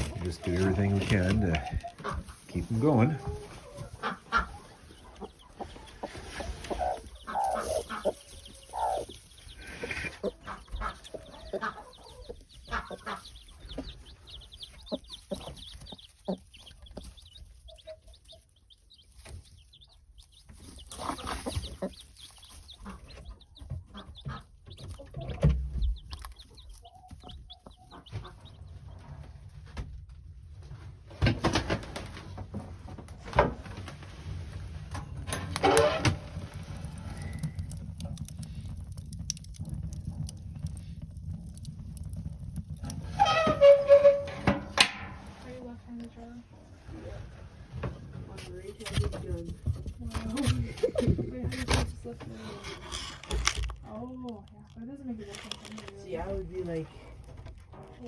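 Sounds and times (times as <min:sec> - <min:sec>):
chickens clucking: 0:00.0 - 0:29.7
rustling and knocks: 0:00.0 - 0:45.6.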